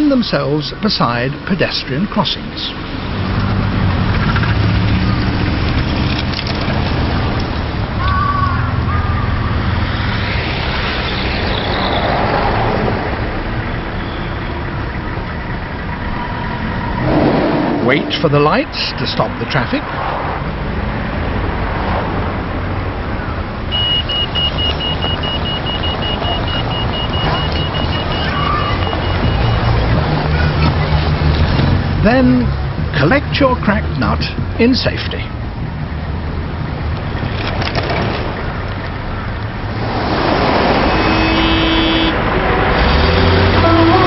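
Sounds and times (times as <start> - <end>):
road traffic: 0.0 - 44.0
steady tone: 16.4 - 19.7
rapid pulsing crossing beep: 23.7 - 30.0.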